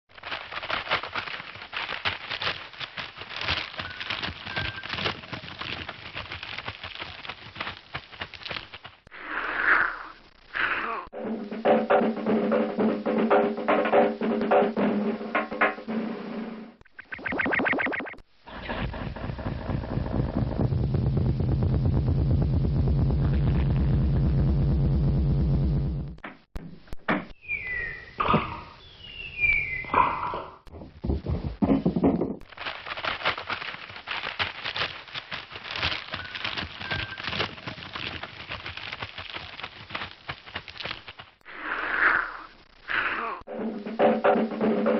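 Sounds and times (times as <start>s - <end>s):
cartoon crunching and cracking: 0.1s - 9.1s, 32.4s - 41.4s
drum roll: 11.1s - 17.8s, 18.5s - 26.2s, 43.5s - 44.9s.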